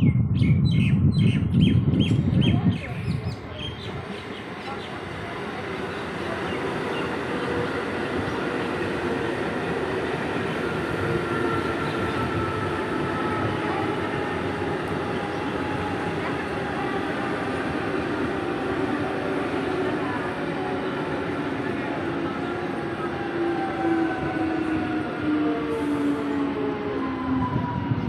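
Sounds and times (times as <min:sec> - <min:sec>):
train rail rumble: 0:00.0 - 0:28.0.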